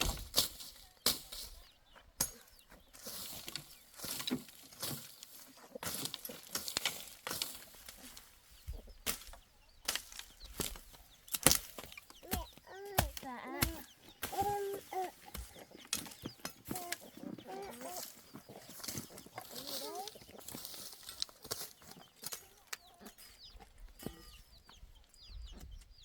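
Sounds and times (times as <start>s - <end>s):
crowbar striking ground: 0.0s - 1.6s, 2.2s - 22.5s
metal scraping through soil: 2.8s - 9.3s, 14.3s - 22.5s.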